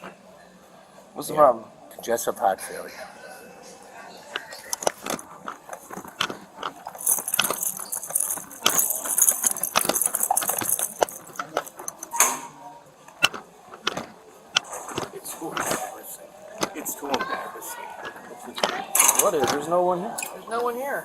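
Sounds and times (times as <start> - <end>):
metallic jangling and clicking: 4.4 - 12.3, 13.2 - 15.8, 18.0 - 19.6.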